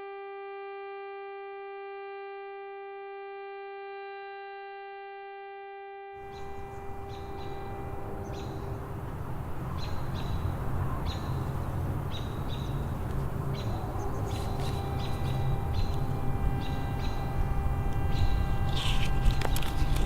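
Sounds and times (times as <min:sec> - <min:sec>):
small birds chirping: 0:06.2 - 0:20.0
steady low rumble: 0:06.2 - 0:20.0.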